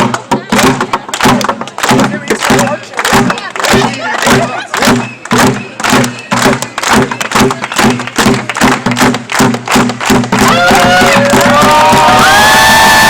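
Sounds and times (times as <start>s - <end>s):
fast drumbeat: 0.0s - 13.0s
crowd cheering and whooping: 10.4s - 13.0s.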